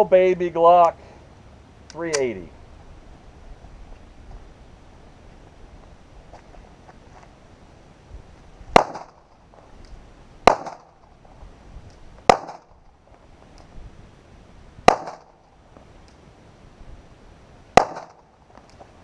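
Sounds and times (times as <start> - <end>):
pistol shots: 8.7 - 9.2, 10.4 - 11.0, 12.3 - 12.7, 14.8 - 15.4, 17.8 - 18.3.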